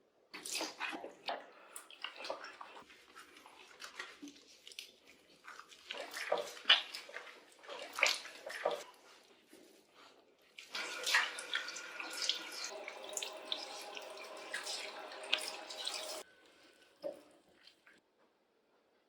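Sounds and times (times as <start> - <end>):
bath water splashing: 0.4 - 9.1, 10.5 - 18.0.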